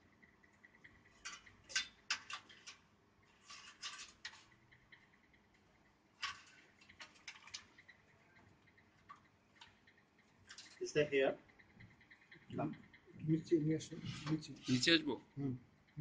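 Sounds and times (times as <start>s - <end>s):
plastic connectors clicking and rattling: 1.1s - 4.6s, 6.2s - 9.8s.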